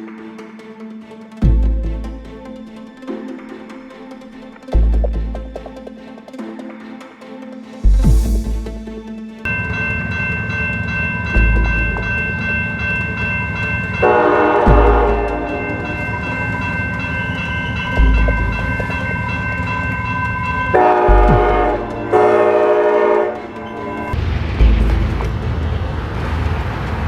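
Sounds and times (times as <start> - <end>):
moving train rumble: 7.8 - 27.0
train horn blasts: 14.0 - 16.3, 20.7 - 24.2.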